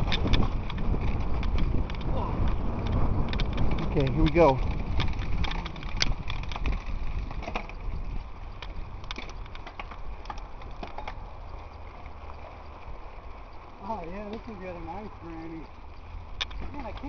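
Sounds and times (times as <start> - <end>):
bike clicks and rattles: 0.0 - 17.0
tyre and wind rumble: 0.0 - 17.0.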